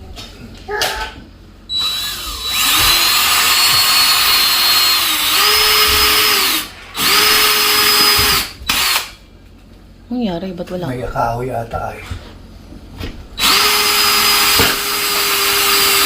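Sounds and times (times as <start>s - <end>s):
power drill whining: 1.7s - 9.2s, 13.4s - 16.0s.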